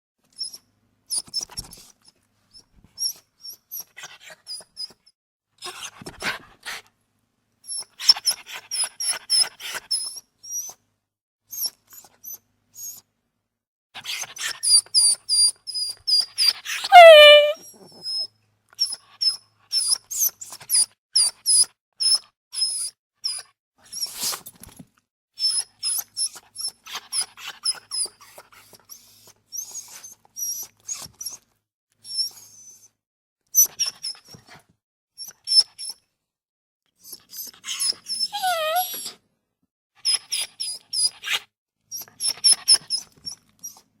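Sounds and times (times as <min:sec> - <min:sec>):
dog whining: 0:16.9 - 0:17.6, 0:37.4 - 0:39.2.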